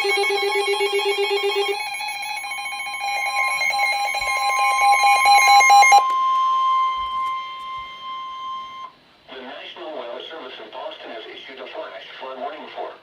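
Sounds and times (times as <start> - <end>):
fast-pulsing electronic alarm beep: 0.0 - 8.9
steady single-pitch alert tone: 0.0 - 8.9.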